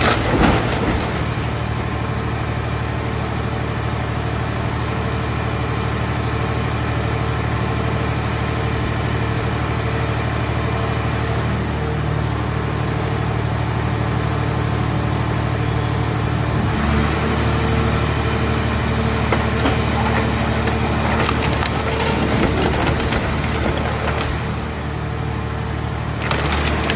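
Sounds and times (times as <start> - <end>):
car body cracking and crunching: 0.0 - 1.9, 19.0 - 25.0, 26.1 - 26.9
hydraulic power unit running: 0.0 - 3.8, 13.5 - 26.9.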